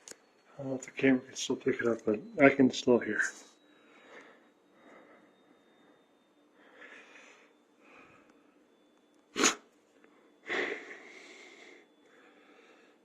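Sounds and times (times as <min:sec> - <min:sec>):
thin high steady tone: 0:00.0 - 0:13.0
person breathing: 0:03.8 - 0:08.4, 0:10.2 - 0:13.0
sharp nasal burst: 0:09.4 - 0:09.6.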